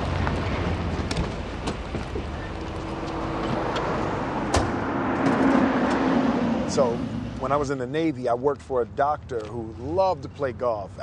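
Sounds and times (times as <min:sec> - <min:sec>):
street traffic: 0:00.0 - 0:11.0.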